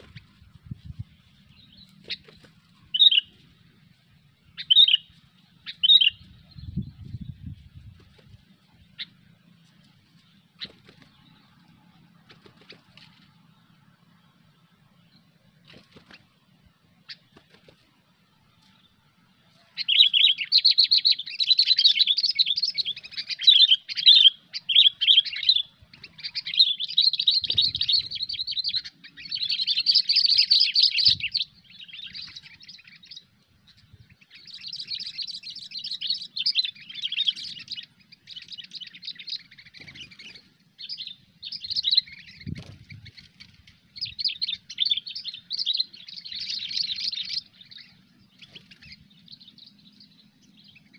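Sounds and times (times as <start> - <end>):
bird chattering song: 1.3 - 3.4, 4.5 - 7.5, 8.8 - 9.4, 17.0 - 17.6, 19.6 - 50.9.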